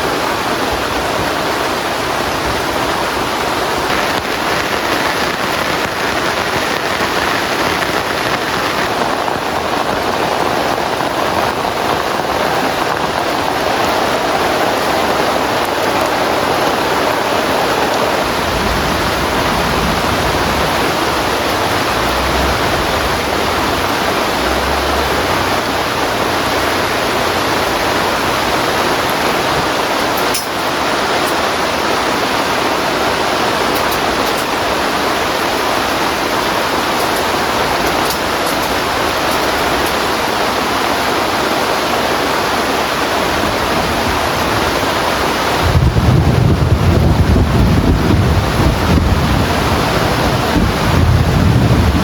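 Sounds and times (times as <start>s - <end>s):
heavy rain: 0.0s - 52.0s
deep low rumble: 18.4s - 27.9s.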